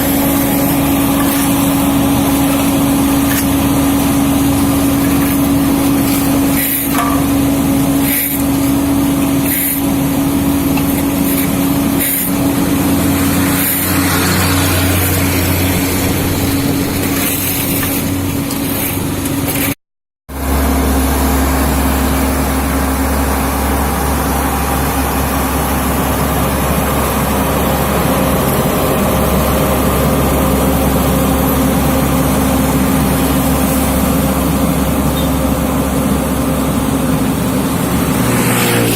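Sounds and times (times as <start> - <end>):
heavy machinery engines running: 0.0 - 19.8, 20.4 - 38.9.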